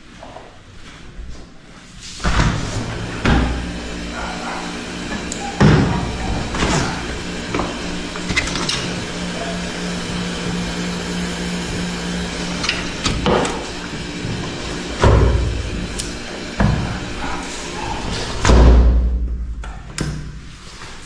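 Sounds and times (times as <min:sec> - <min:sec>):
sliding window opening: 0:02.0 - 0:18.7
outside hum with knocks: 0:02.2 - 0:20.4.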